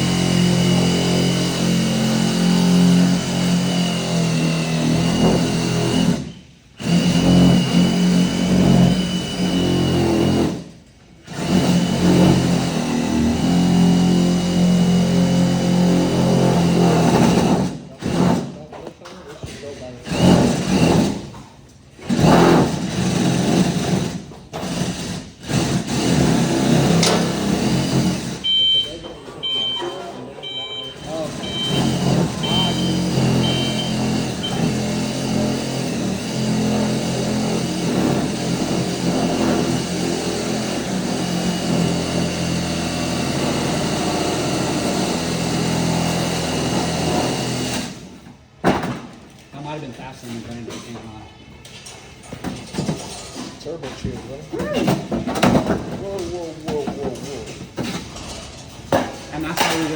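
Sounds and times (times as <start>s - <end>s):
handheld power tool bursts: 30.4s - 38.8s
angle grinder cutting sheet metal: 31.0s - 48.1s.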